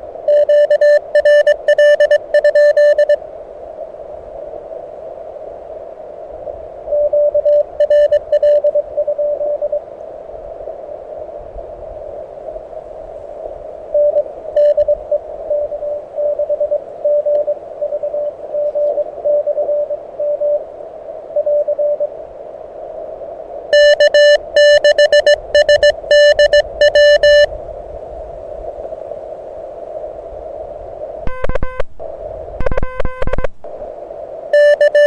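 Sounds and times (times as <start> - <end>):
loud keyed morse sidetone: 0.3 - 3.2, 7.8 - 8.6, 23.8 - 27.5, 31.3 - 31.8, 32.6 - 33.5, 34.6 - 35.0
weak morse code signal: 0.3 - 3.2, 6.9 - 9.8, 14.0 - 20.6, 21.4 - 22.1, 23.7 - 27.5, 31.3 - 33.8, 34.6 - 35.0.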